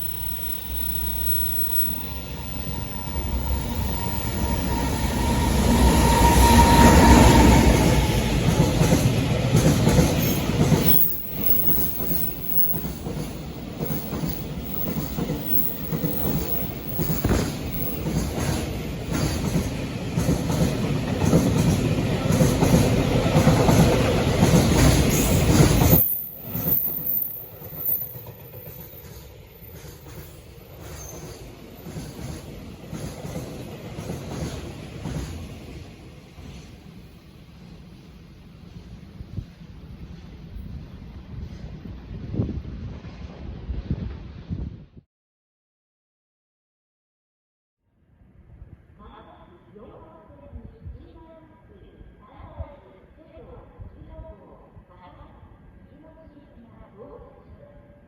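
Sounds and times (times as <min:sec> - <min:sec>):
high steady squeal: 0:00.0 - 0:08.5, 0:10.2 - 0:18.4, 0:25.1 - 0:29.2
faint train rumble: 0:00.0 - 0:44.5
train wheels clattering over rails: 0:00.2 - 0:36.8.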